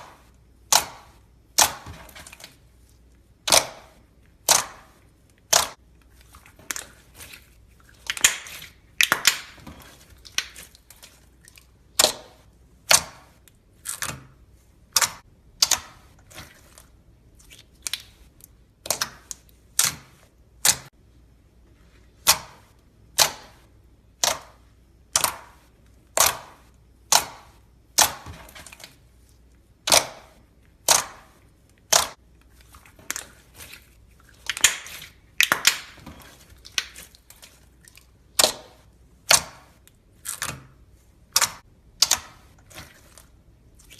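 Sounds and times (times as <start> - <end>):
slime squishing: 0.0 - 21.1, 21.8 - 43.9
air bubbles popping in slime: 34.4 - 36.0.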